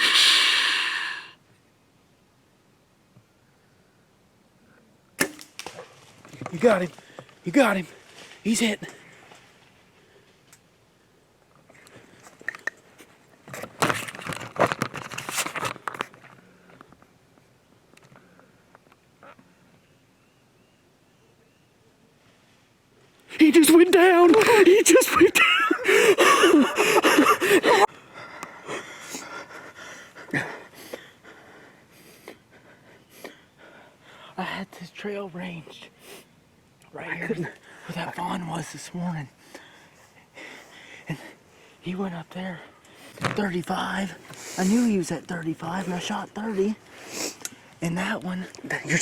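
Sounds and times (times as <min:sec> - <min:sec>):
excited voice: 0:00.0 - 0:01.3, 0:23.4 - 0:27.9
person breathing heavily: 0:00.0 - 0:01.4, 0:25.8 - 0:34.4.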